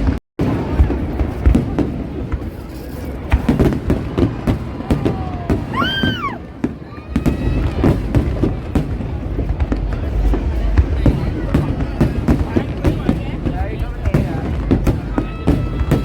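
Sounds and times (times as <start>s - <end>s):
fireworks bangs and pops: 0.0s - 16.0s
firework whistle: 15.0s - 16.0s.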